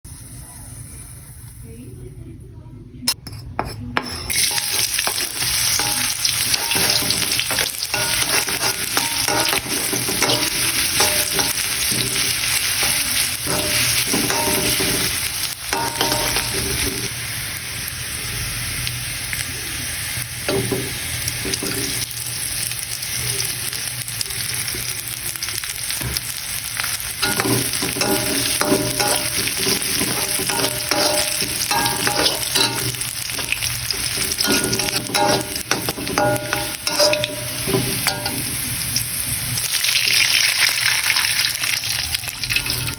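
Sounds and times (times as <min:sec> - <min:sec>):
utensil scraping a pan: 0:03.2 - 0:17.1, 0:27.2 - 0:38.5
food sizzling in a frying pan: 0:04.0 - 0:42.9.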